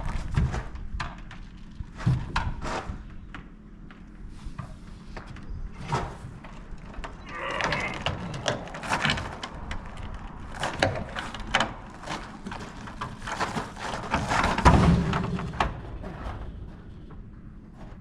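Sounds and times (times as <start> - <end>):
hard objects knocking and clattering: 5.3 - 17.8
heavy thump: 14.1 - 17.4.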